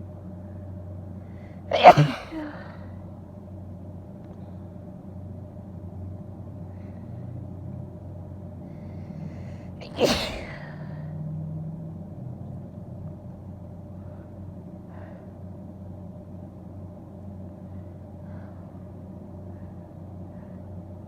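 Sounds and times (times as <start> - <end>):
woman sneezing: 1.7 - 2.8, 9.8 - 10.8.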